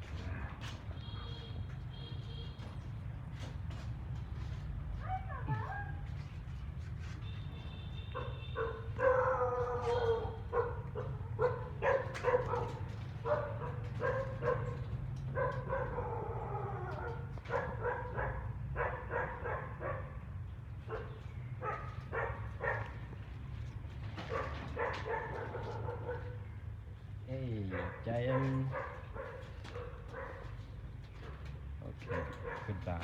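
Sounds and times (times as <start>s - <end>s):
dog whining and yipping: 9.0s - 10.4s.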